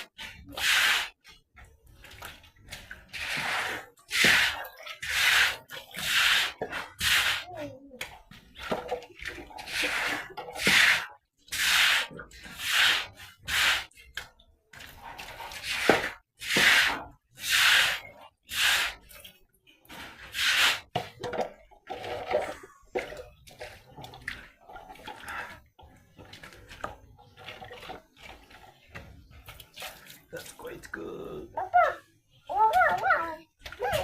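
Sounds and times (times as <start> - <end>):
water sloshing and dripping: 0.0 - 31.4, 32.0 - 34.0.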